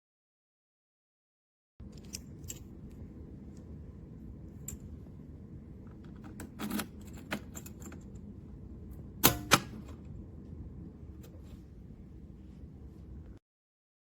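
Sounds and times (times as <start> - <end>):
sharp loud clicks of safe: 9.2 - 10.0.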